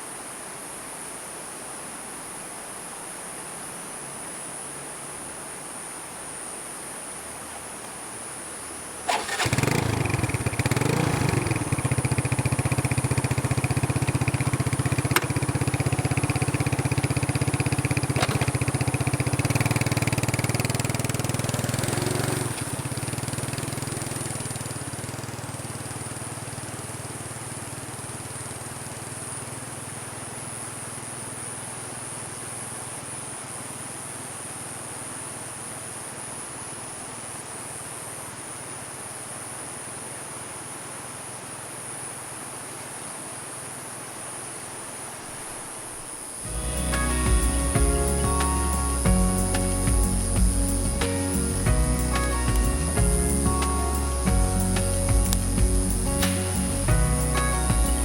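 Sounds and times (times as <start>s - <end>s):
crickets chirring: 0.0s - 58.0s
small motorcycle engine: 9.0s - 39.6s, 45.9s - 58.0s.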